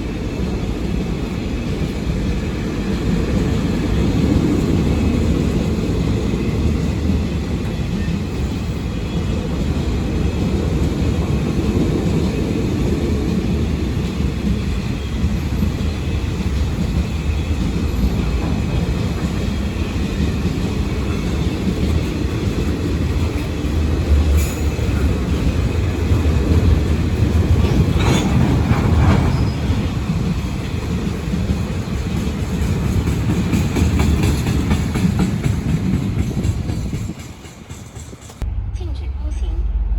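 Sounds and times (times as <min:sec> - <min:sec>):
train wagons rumbling past: 0:00.0 - 0:39.9
wheel squeal: 0:29.2 - 0:29.9.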